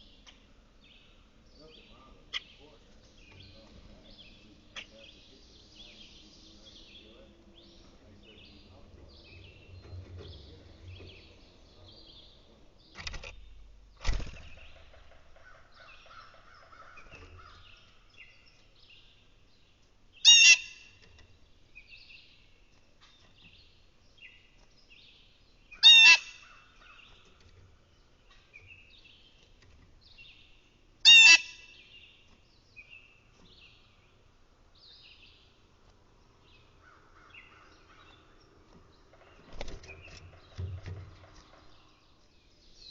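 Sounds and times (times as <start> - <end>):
small birds chirping: 0.0 - 42.9
loud harsh bird call: 20.2 - 21.0, 25.7 - 27.0, 31.0 - 32.0.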